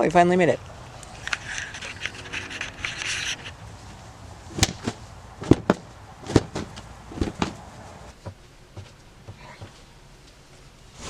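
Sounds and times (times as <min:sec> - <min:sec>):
rustling: 0:00.0 - 0:11.0
sharp knocks and bangs: 0:04.5 - 0:09.8.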